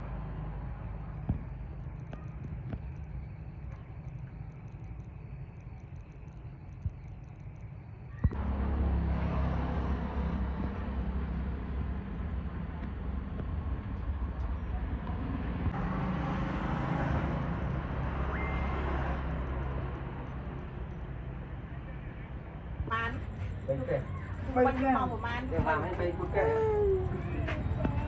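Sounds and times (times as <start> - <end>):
traffic noise: 0.0 - 28.0
vehicle engine running: 0.0 - 28.0
click: 1.2 - 8.4.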